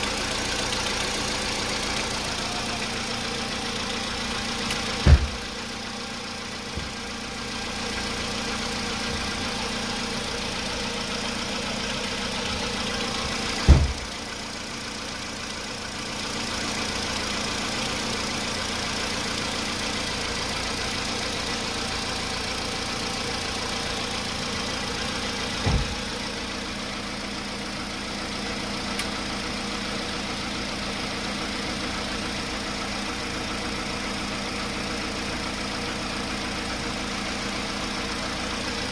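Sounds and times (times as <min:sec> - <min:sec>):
car engine knocking: 0:00.0 - 0:38.9
dull thumps: 0:05.0 - 0:05.5.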